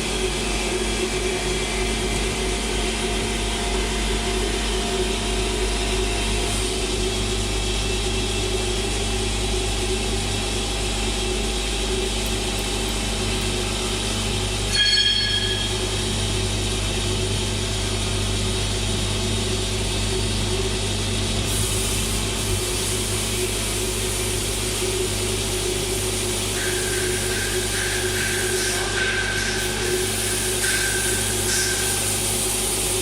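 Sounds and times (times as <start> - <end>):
cnc machine droning: 0.0 - 33.0
high-pitched machine squeal: 14.7 - 15.8.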